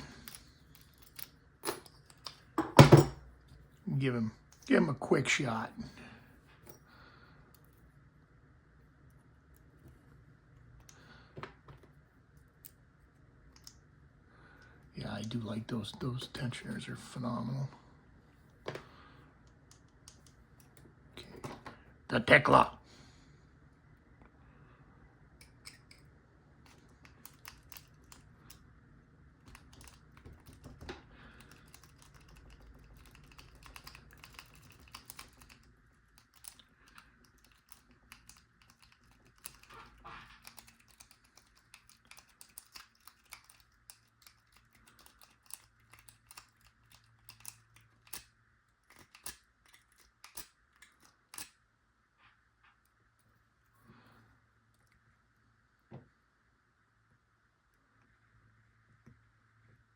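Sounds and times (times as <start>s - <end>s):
lock pick clicking and scraping: 26.7s - 28.6s, 29.4s - 51.6s.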